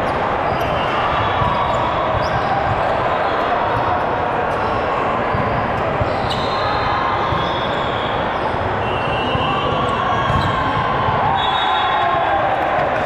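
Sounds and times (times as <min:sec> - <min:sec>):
basketball bouncing on court: 0:00.0 - 0:06.5, 0:09.6 - 0:11.3.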